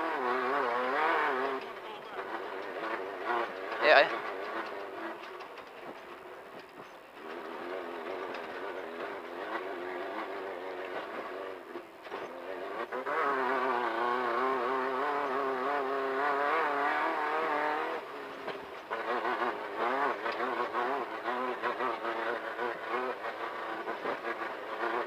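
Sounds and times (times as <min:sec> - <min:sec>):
car engine running under load: 0:00.0 - 0:25.0.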